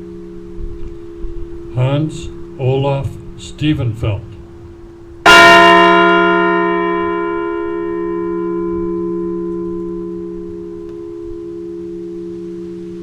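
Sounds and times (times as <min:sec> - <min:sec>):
bell ringing: 0:05.2 - 0:12.1.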